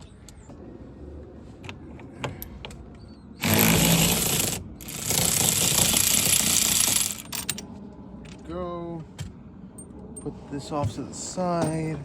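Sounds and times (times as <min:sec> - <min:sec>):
power tool running out a bolt: 0:03.4 - 0:07.5.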